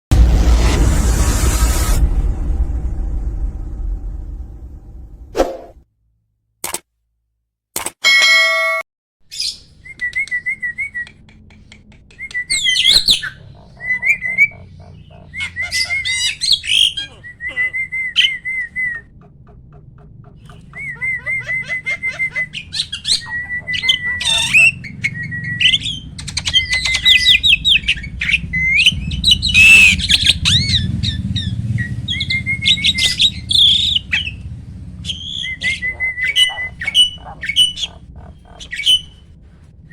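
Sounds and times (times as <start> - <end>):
starling singing: 12.2 - 39.3
low steady hum: 13.1 - 39.9.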